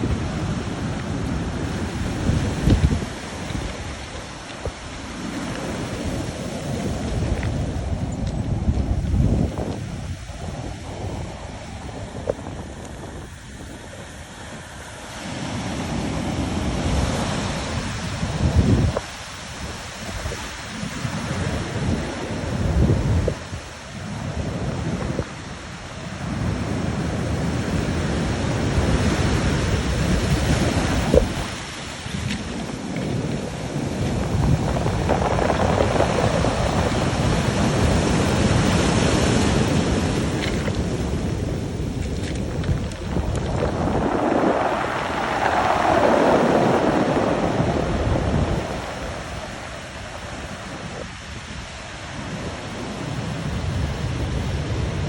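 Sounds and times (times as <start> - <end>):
ocean waves crashing on rocks: 0.0 - 55.0
surf pounding on rocks: 27.8 - 51.3.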